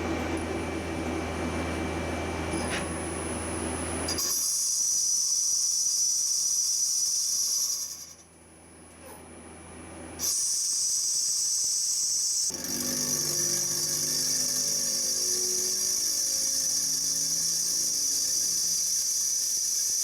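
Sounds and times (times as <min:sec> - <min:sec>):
low machine hum: 0:00.0 - 0:04.2
high hiss of metal cutting: 0:10.2 - 0:12.6.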